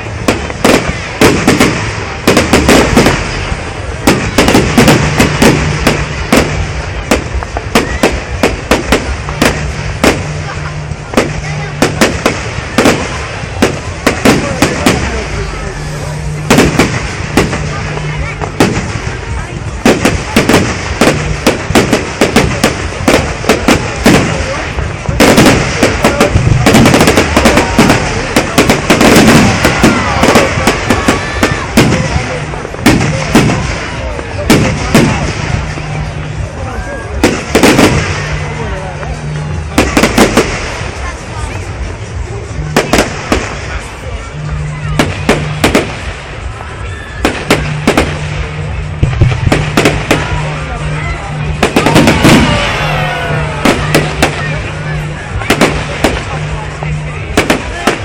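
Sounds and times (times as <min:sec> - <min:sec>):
fireworks banging: 0:00.0 - 0:58.0.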